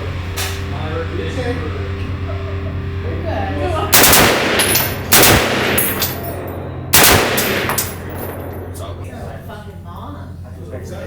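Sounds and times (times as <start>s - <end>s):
automatic rifle bursts: 3.9s - 8.6s.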